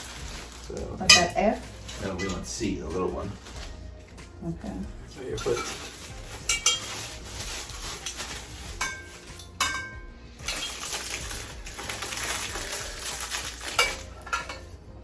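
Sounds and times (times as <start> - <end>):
scraping and rattling: 5.2 - 14.8
metal rack parts clinking: 5.4 - 7.3, 12.9 - 14.7.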